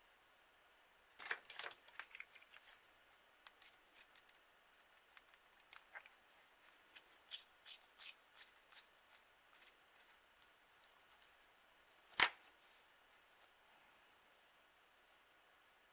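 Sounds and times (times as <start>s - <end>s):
small parts clicking and rustling: 1.1s - 2.8s, 3.4s - 4.4s.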